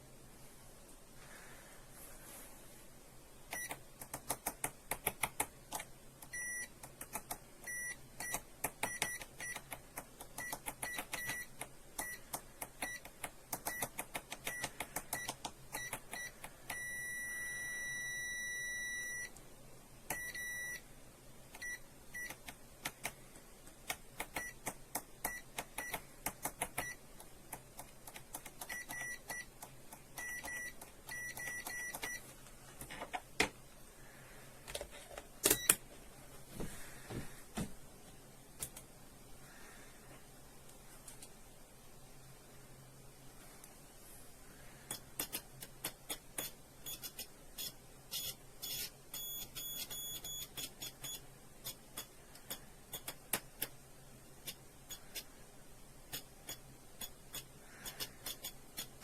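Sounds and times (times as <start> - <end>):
multimeter buzzer beeps: 3.5 - 3.8, 6.3 - 6.8, 7.6 - 9.7, 10.4 - 19.4, 20.1 - 20.8, 21.6 - 22.4, 28.6 - 29.5, 30.2 - 32.2, 46.4 - 53.1.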